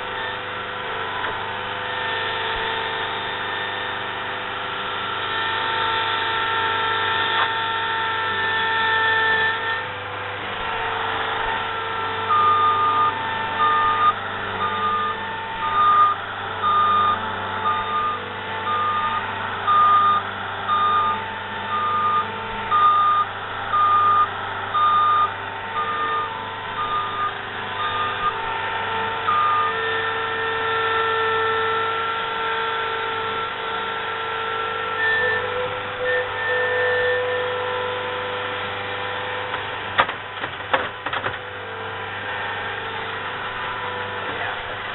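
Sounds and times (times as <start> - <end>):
construction machine engine running: 0.0 - 44.9
reversing alarm beeping: 7.2 - 9.9, 11.6 - 32.2.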